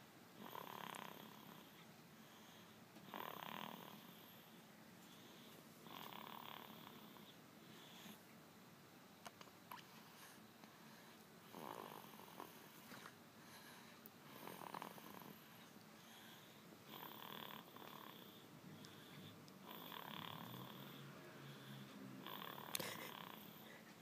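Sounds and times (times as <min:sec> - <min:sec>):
person snoring: 0:00.4 - 0:01.7, 0:03.1 - 0:04.4, 0:05.9 - 0:07.3, 0:16.9 - 0:23.7.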